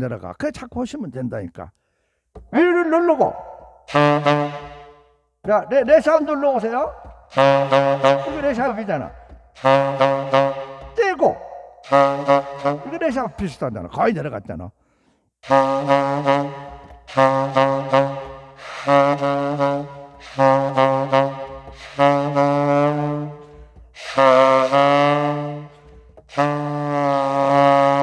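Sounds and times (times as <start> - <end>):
saxophone playing low notes softly: 3.9 - 5.0, 6.9 - 13.0, 15.4 - 28.0.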